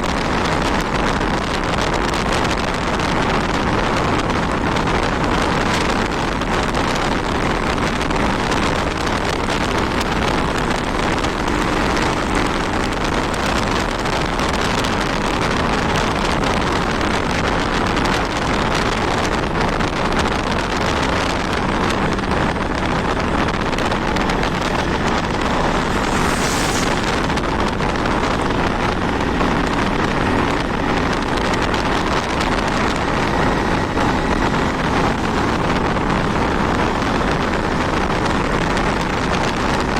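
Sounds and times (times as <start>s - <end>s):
wind rushing over microphone: 0.0s - 39.9s
short hiss: 24.8s - 28.1s.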